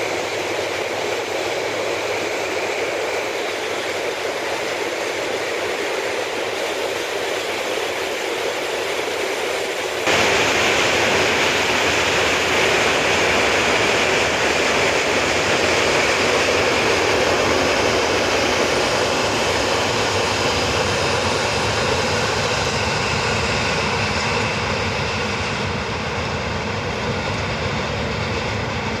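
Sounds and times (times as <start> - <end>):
passing train rumble: 10.1 - 29.0.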